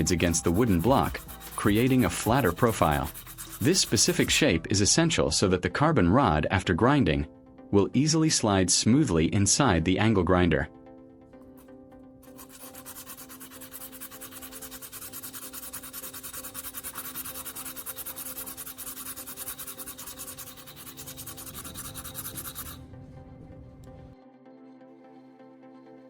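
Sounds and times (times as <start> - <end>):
rod rubbing on sandpaper: 0.0 - 4.6, 11.6 - 22.8.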